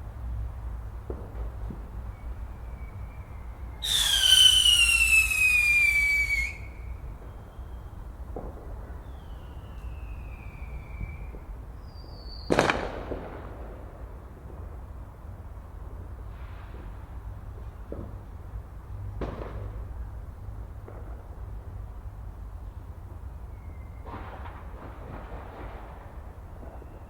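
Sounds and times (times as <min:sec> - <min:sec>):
whistling firework: 0:00.3 - 0:13.7, 0:23.4 - 0:27.0
firework bang: 0:03.8 - 0:07.4.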